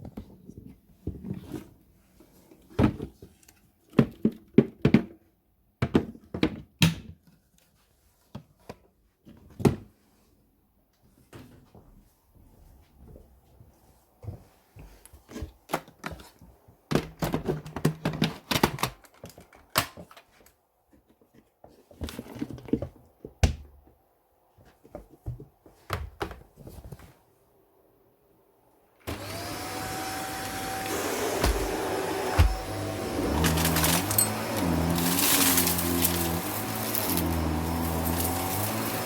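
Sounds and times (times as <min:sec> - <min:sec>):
vacuum cleaner whining: 0:29.0 - 0:39.0
hard parts clattering: 0:32.4 - 0:39.0.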